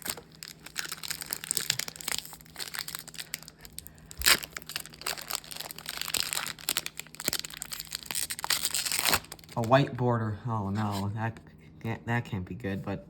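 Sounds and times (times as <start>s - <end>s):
foil wrapper crinkling and tearing: 0.0s - 9.8s.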